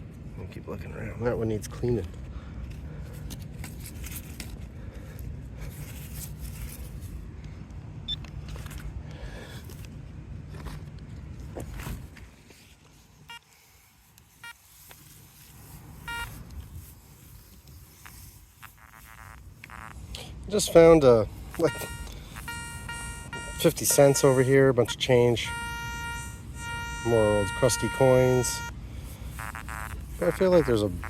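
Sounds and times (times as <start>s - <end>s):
metal detector beeps: 16.0s - 16.4s, 18.6s - 19.9s, 20.7s - 28.7s, 29.3s - 31.0s.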